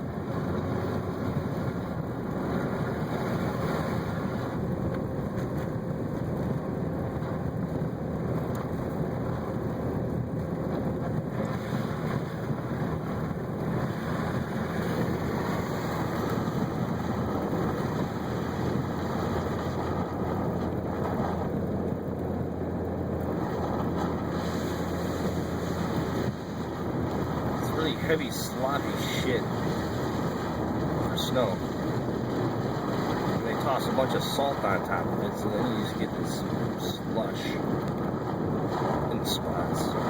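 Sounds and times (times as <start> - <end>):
car engine running: 0.0 - 40.0
tyres rushing through slush: 27.4 - 31.9, 33.1 - 37.6.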